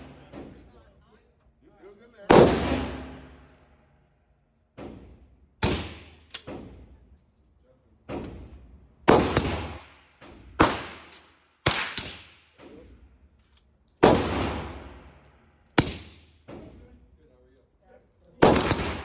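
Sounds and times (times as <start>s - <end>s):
pistol shots: 2.3s - 3.6s, 5.6s - 6.7s, 9.1s - 10.0s, 10.6s - 12.4s, 14.0s - 15.0s, 15.8s - 16.3s, 18.4s - 19.0s.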